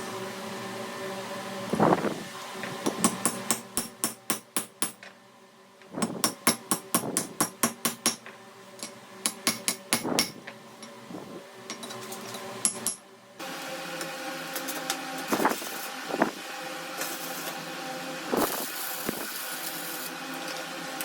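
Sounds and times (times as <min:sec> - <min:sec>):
hammer striking metal: 0:02.9 - 0:05.0, 0:06.0 - 0:10.4.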